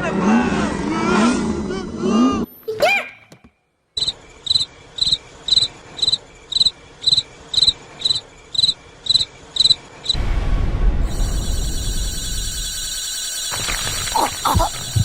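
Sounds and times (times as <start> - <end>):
cricket chirping: 4.0 - 10.2, 11.1 - 15.0.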